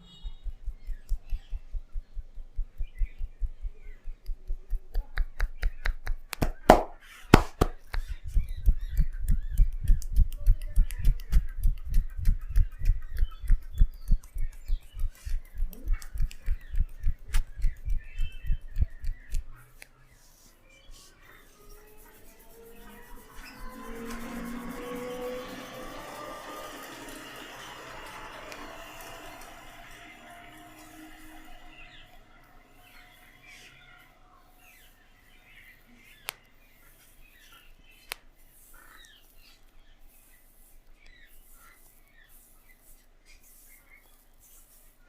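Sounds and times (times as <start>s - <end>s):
hands tapping on head: 0.5s - 19.5s
loud sharp smacks: 6.4s - 7.8s.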